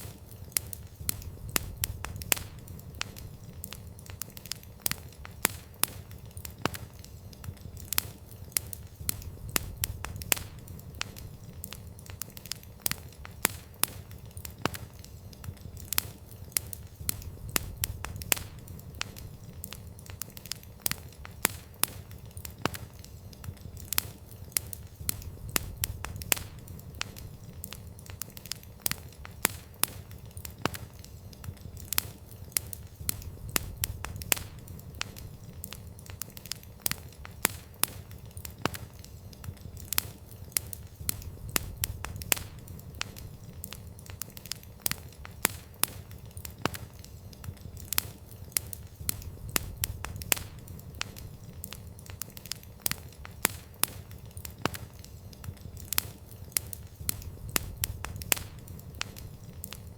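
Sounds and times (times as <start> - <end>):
low rumble of flames: 0.0 - 59.9
wood fire crackling: 0.0 - 59.9.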